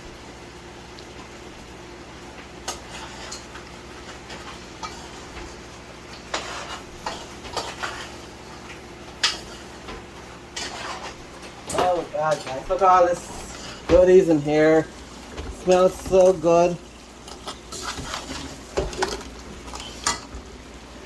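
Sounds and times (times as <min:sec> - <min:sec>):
spoon scraping metal pot: 0:10.6 - 0:11.2.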